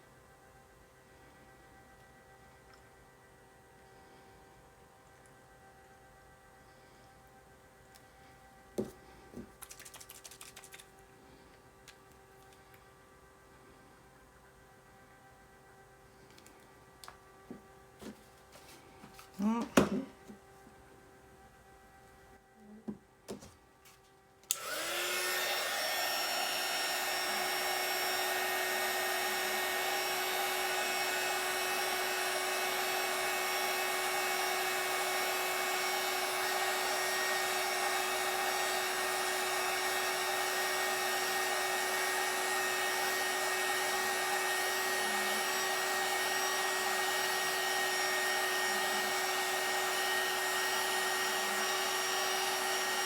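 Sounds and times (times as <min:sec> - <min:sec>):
electric air blower running: 0:24.5 - 0:53.0.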